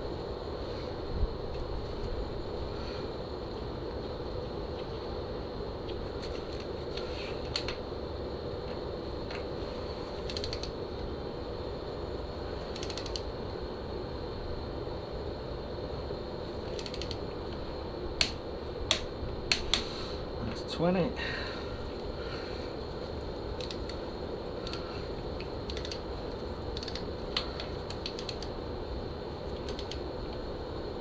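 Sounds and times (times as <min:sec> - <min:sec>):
steady background hum: 0:00.0 - 0:31.0
ratchet wrench clicking: 0:10.2 - 0:10.7, 0:12.7 - 0:13.2, 0:16.7 - 0:17.2, 0:23.6 - 0:24.0, 0:25.6 - 0:26.0, 0:26.7 - 0:27.1, 0:27.9 - 0:28.5, 0:29.6 - 0:30.0.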